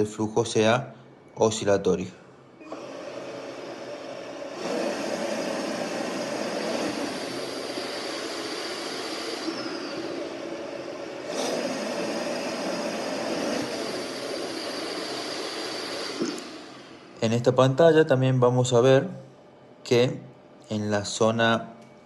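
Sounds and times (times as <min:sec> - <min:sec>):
rush of air with thin whine: 0:02.8 - 0:17.2.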